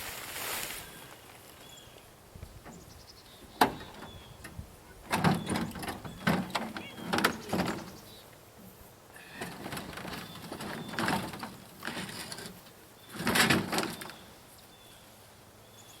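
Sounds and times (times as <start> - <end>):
metal sections scraping and clunking: 3.4 - 8.2, 9.2 - 14.4.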